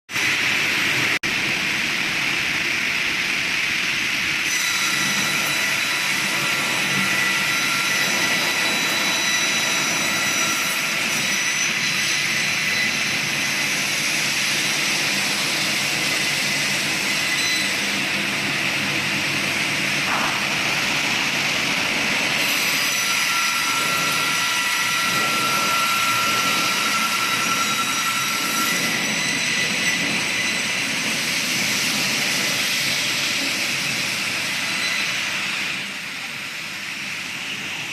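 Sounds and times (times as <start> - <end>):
woodworking machinery whining: 4.5 - 33.9.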